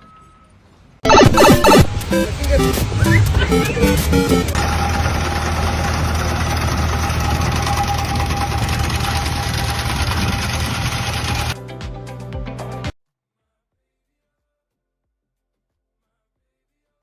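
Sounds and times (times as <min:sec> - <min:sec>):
music: 0:01.1 - 0:04.6, 0:11.6 - 0:13.0
engine running steadily: 0:03.0 - 0:11.6.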